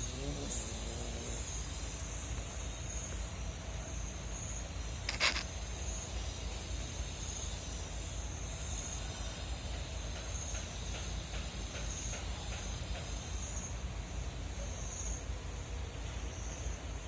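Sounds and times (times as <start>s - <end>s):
insect chirring: 0.0s - 9.1s
sharp rustle: 5.0s - 5.5s.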